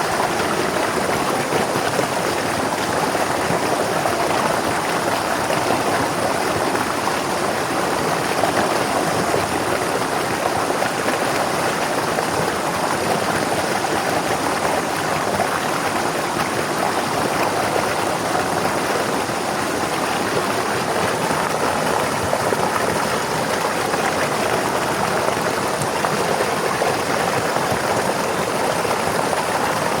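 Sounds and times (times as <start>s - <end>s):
river water flowing over rocks: 0.0s - 30.0s.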